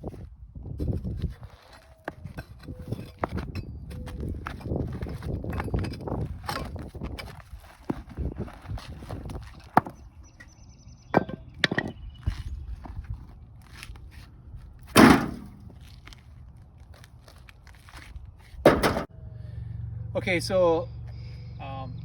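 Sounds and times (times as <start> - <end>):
tool knocking and scraping asphalt: 0.0 - 16.0, 18.6 - 19.1
blacktop breaking crunch: 0.1 - 19.1.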